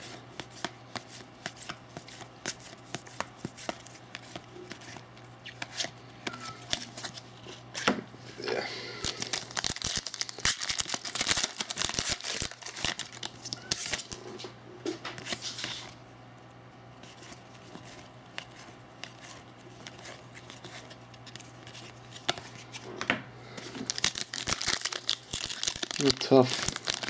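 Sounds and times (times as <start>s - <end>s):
trading cards shuffled by hand: 9.0s - 16.0s.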